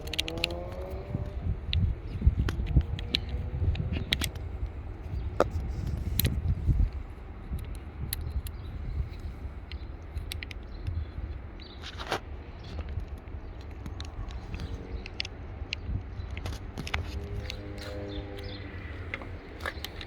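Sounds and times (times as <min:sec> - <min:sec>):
clicks and metallic taps of tools: 0:00.0 - 0:04.7, 0:11.8 - 0:20.0.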